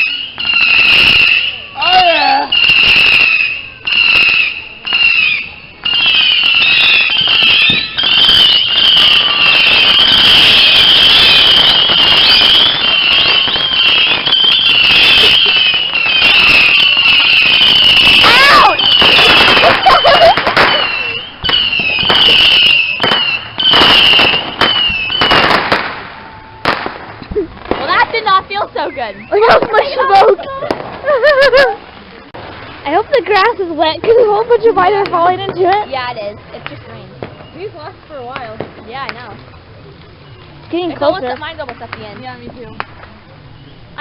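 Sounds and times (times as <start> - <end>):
whistling fireworks shrieking: 0.0 - 31.8, 37.1 - 39.4.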